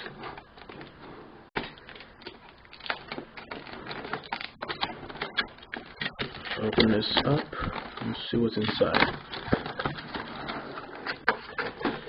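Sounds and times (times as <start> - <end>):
cardboard box rustling and scraping: 4.7 - 12.0.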